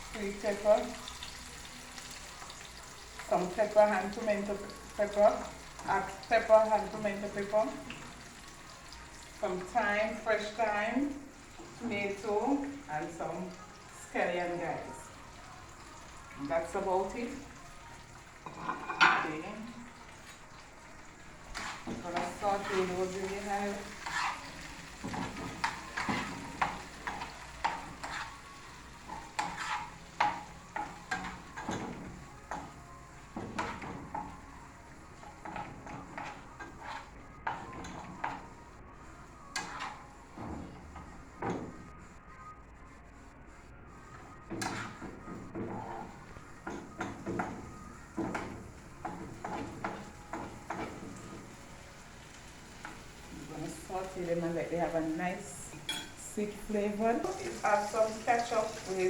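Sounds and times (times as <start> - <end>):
vegetables sizzling in pan: 0.0 - 41.9, 44.4 - 59.0
spoon scraping pan: 18.4 - 19.6, 21.4 - 34.4, 35.2 - 38.6, 39.4 - 41.8, 44.5 - 54.2.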